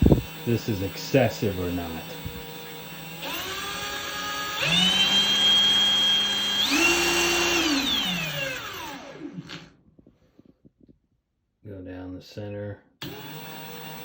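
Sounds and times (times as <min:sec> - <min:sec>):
impact wrench motor whine: 0:00.0 - 0:09.8, 0:13.0 - 0:14.0.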